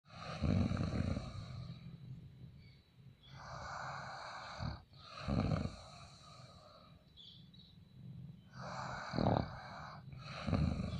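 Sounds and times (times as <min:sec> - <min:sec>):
person snoring: 0:00.1 - 0:01.9, 0:03.3 - 0:06.6, 0:08.5 - 0:10.9
airy breath: 0:03.2 - 0:07.1, 0:08.5 - 0:10.9.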